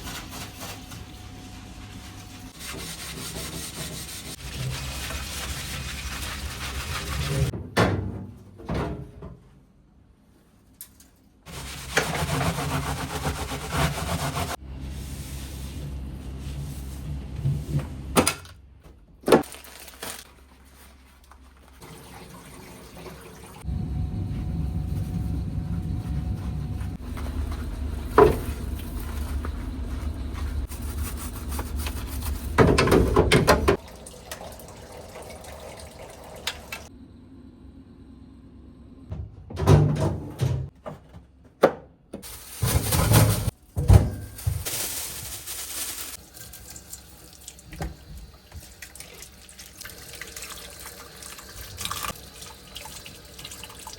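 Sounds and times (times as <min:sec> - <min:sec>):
water splashing in sink: 0:32.6 - 0:36.9, 0:44.5 - 0:53.9.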